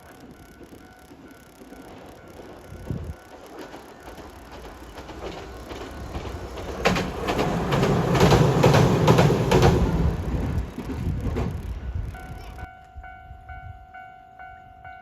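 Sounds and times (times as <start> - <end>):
train rumbling past: 0.0 - 14.9
wheels clacking over rail joints: 0.1 - 12.7.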